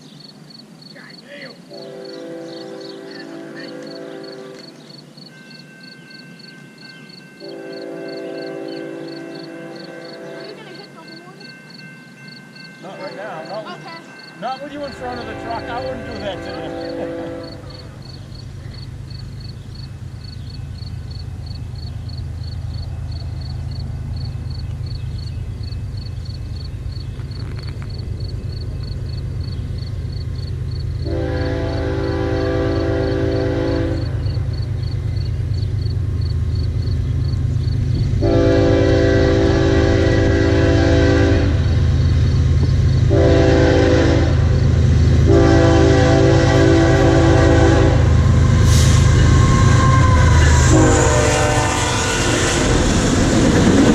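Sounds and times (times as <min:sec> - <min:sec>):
train rumble: 0:00.0 - 0:53.9
train horn blasts: 0:01.7 - 0:04.9, 0:07.4 - 0:11.4, 0:12.9 - 0:18.2, 0:31.0 - 0:34.5, 0:38.2 - 0:41.9, 0:43.0 - 0:53.0.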